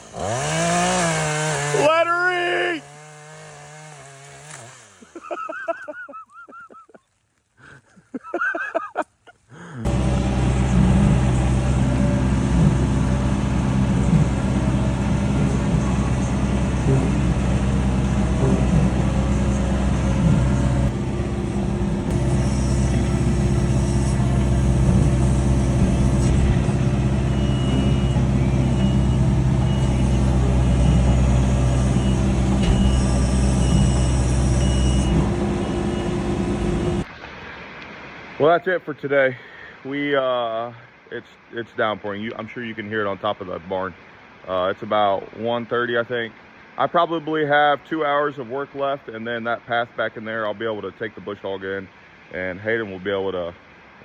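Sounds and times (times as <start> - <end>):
heavy machine engine running: 9.9 - 37.1
reversing alarm beeping: 9.9 - 37.1.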